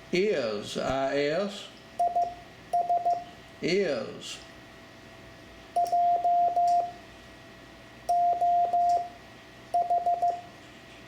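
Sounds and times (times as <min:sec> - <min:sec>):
morse code tone: 0:02.0 - 0:03.3, 0:05.8 - 0:07.0, 0:08.1 - 0:09.2, 0:09.8 - 0:10.5.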